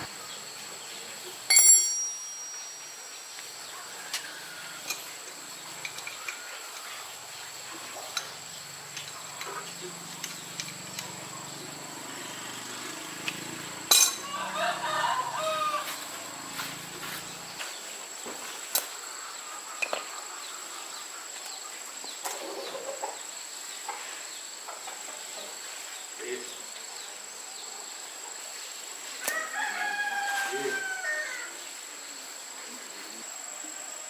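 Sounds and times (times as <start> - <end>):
chickens calling: 3.2 - 25.8.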